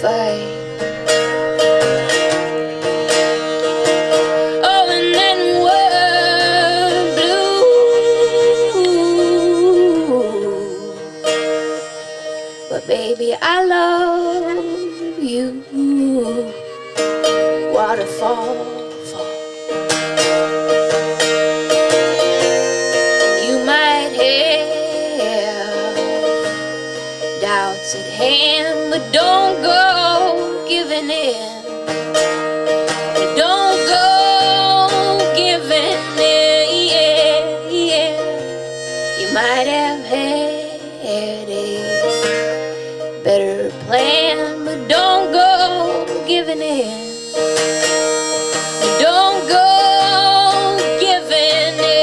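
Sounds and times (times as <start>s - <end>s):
plucked strings: 0.0s - 52.0s
sliding wavering lead line: 32.2s - 52.0s.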